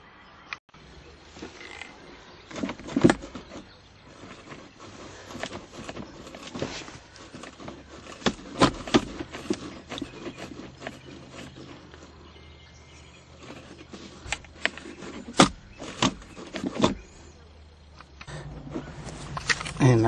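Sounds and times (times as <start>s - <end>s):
plastic car trim knocks and clicks: 5.3s - 11.7s.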